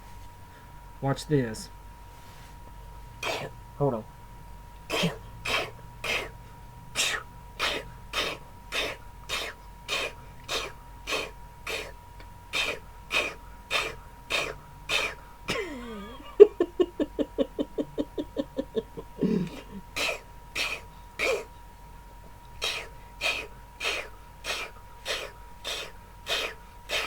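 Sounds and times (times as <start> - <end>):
man fake-sneezing: 3.2 - 3.5, 4.9 - 6.3, 7.0 - 11.9, 12.5 - 15.9, 19.2 - 21.5, 22.6 - 27.0.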